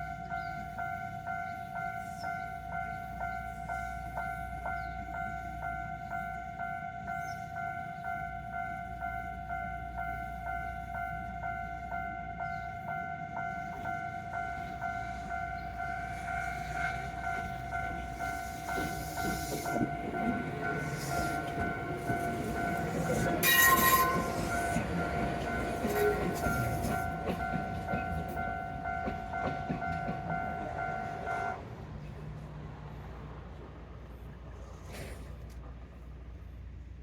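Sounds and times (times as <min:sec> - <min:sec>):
level-crossing bell ringing: 0:00.0 - 0:31.6
train rumbling: 0:01.6 - 0:37.0
train horn blast: 0:17.9 - 0:27.0.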